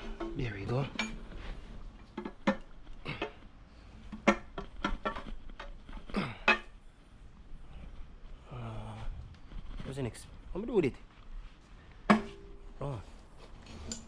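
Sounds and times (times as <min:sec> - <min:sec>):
metal engine parts clinking: 0:00.0 - 0:01.4, 0:13.8 - 0:14.0.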